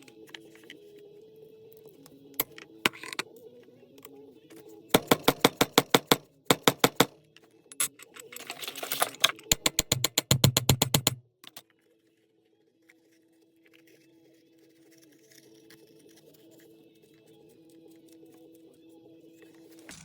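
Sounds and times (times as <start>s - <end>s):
sharp evenly spaced taps: 4.9s - 7.2s, 9.5s - 11.2s.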